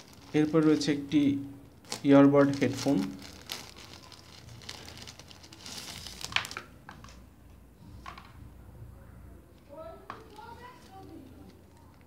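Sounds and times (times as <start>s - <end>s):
plastic packaging crinkling: 0.0s - 7.2s, 10.2s - 12.0s.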